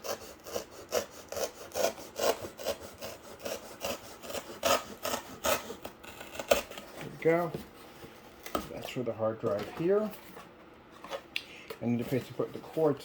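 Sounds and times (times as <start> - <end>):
rasping strokes on cardboard: 0.0 - 7.4.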